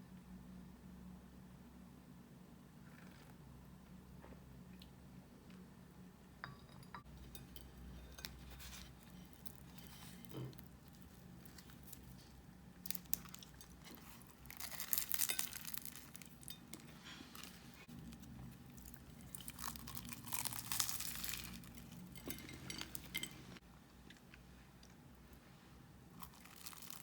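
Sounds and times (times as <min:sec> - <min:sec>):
crinkling tearing rustle: 0:08.2 - 0:23.0, 0:26.2 - 0:27.0.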